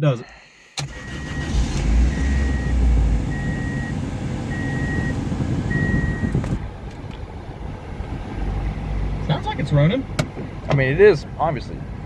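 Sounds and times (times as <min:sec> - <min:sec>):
car warning chime beeping: 0:00.8 - 0:06.4
car engine running: 0:00.8 - 0:12.0.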